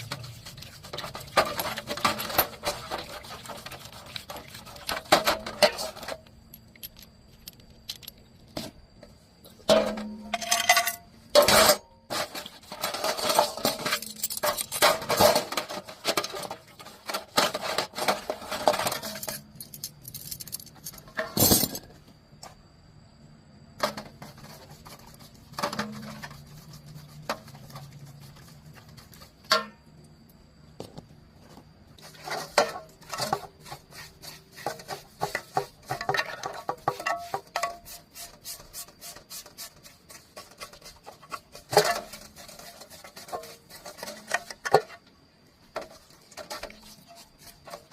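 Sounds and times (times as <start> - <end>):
metal tools clinking: 10.2 - 11.8, 13.0 - 15.4, 18.6 - 22.0.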